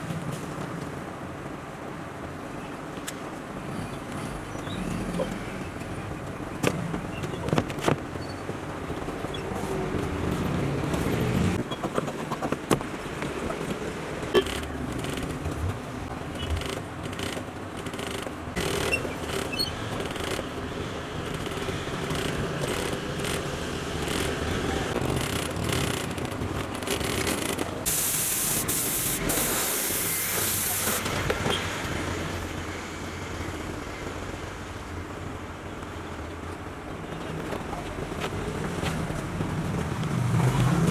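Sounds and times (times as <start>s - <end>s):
traffic noise: 0.0s - 40.9s
workshop background rumble: 0.0s - 40.9s
compressed air hissing: 27.9s - 33.5s.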